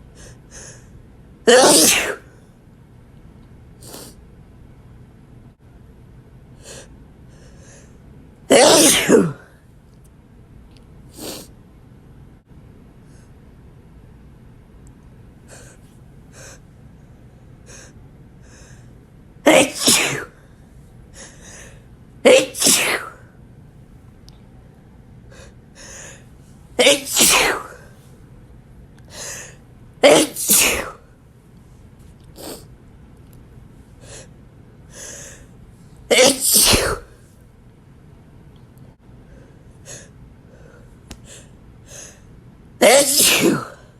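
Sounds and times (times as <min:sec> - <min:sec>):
man sneezing wetly: 0:01.5 - 0:02.3, 0:08.5 - 0:09.4, 0:19.5 - 0:20.3, 0:22.3 - 0:23.2, 0:26.8 - 0:27.8, 0:30.0 - 0:31.0, 0:36.1 - 0:37.1, 0:42.8 - 0:43.8
catching breaths: 0:06.6 - 0:08.0.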